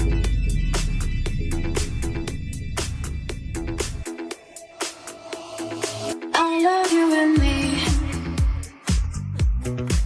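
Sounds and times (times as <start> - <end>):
disco beat with bass: 0.0 - 10.0
person singing: 4.6 - 9.2.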